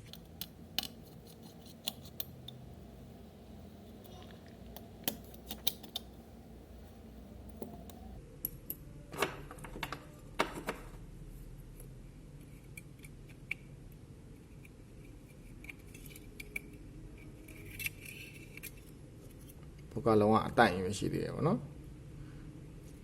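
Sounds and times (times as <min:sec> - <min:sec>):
tool scraping: 0:00.0 - 0:02.6
small tools clicking and tapping: 0:00.0 - 0:02.7, 0:04.1 - 0:06.1.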